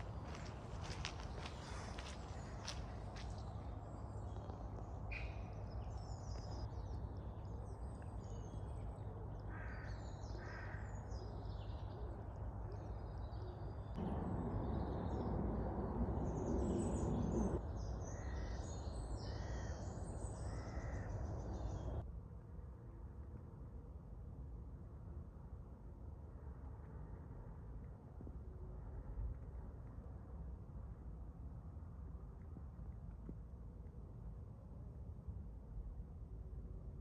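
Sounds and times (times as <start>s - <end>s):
crows cawing: 9.5s - 11.0s, 20.5s - 21.2s
low rushing background: 13.8s - 18.6s.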